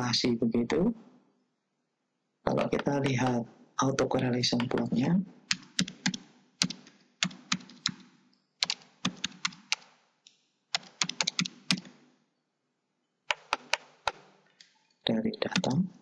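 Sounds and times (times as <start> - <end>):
computer keyboard typing: 4.6 - 10.0, 10.7 - 12.0, 13.3 - 14.3, 15.4 - 15.8.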